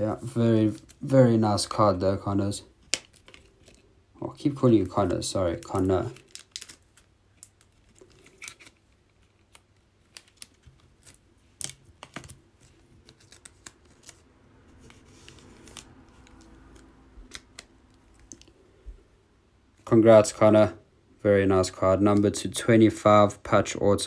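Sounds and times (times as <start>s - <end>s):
plastic and card clicks and taps: 8.4s - 13.8s.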